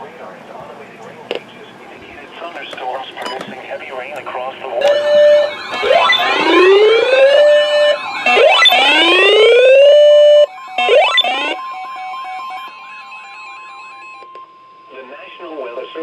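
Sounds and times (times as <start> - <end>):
steady alert tone: 4.8 - 9.9
whooping alarm tone: 4.8 - 14.3
wavering alarm tones: 4.8 - 15.6.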